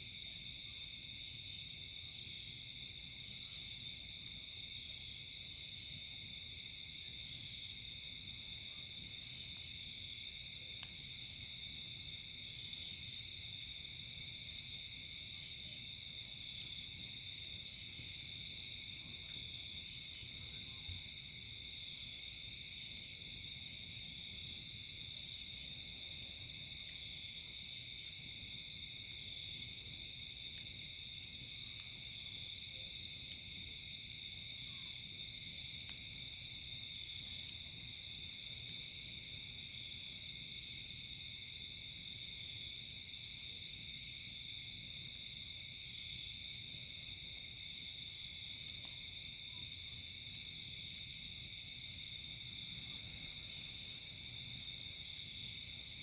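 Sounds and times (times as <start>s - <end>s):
night insects trilling: 0.0s - 56.0s.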